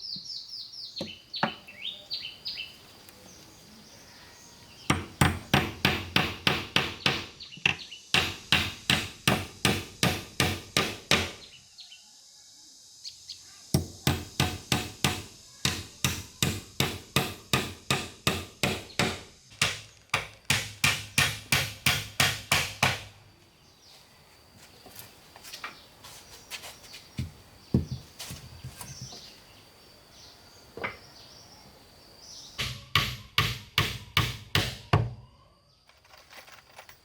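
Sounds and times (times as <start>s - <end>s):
hammer blows on wood: 13.8s - 23.1s.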